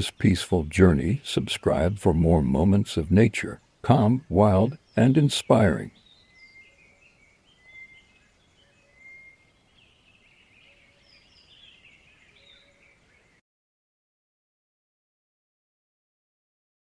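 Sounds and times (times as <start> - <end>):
birds chirping and whistling: 3.6 - 13.4.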